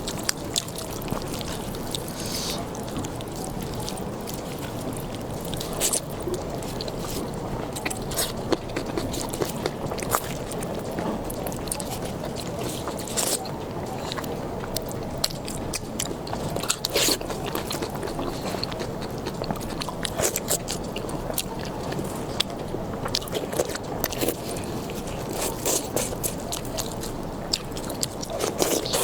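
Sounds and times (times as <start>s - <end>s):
person chewing food: 0.0s - 29.0s
steady low background noise: 0.0s - 29.0s.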